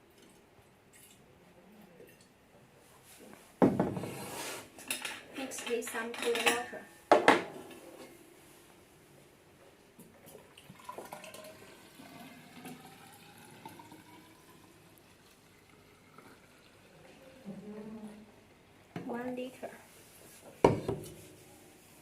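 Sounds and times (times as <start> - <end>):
water pouring into container: 10.4 - 17.6.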